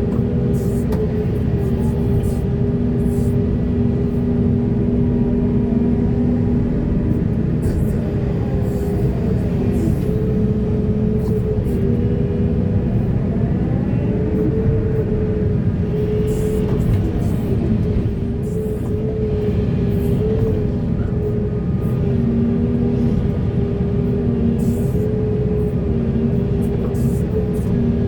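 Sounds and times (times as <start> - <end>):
heavy diesel machinery rumbling: 0.0 - 28.0.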